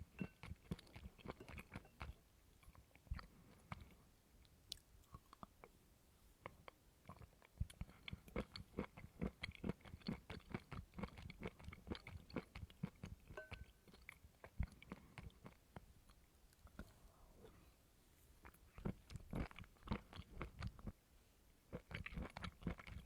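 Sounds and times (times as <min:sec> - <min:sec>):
person chewing crunchy food: 0:00.2 - 0:04.0, 0:06.4 - 0:17.0, 0:18.4 - 0:21.0, 0:21.7 - 0:23.0.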